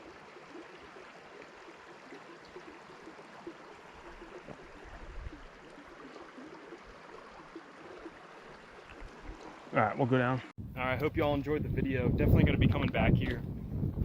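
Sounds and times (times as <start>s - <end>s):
creek gurgling: 0.0s - 10.5s.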